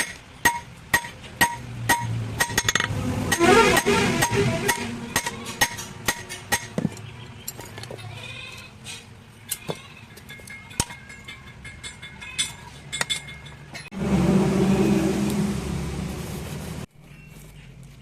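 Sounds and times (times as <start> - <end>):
loud low rumble: 14.0 - 16.9.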